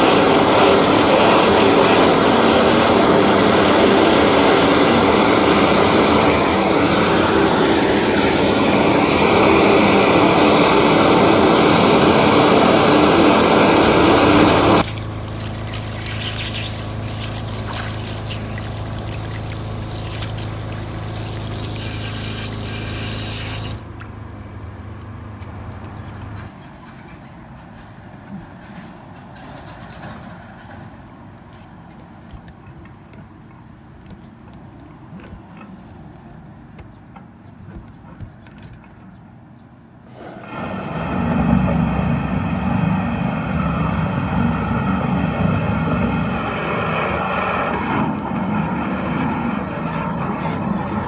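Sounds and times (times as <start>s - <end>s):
water rushing through drain: 0.0s - 24.6s, 40.1s - 51.0s
drain jetter engine running: 0.0s - 26.5s, 40.1s - 51.0s.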